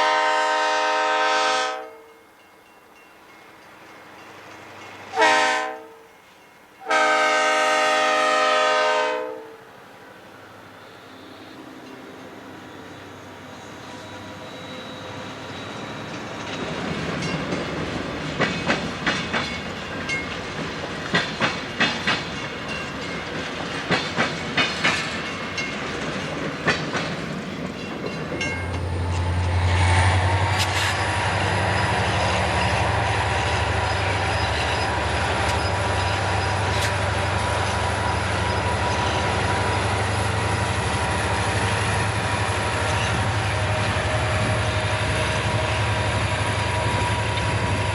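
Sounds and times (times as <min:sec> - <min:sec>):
heavy train rumble: 0:00.0 - 0:01.8, 0:02.4 - 0:47.9
train wheels clacking over rail joints: 0:15.6 - 0:47.9.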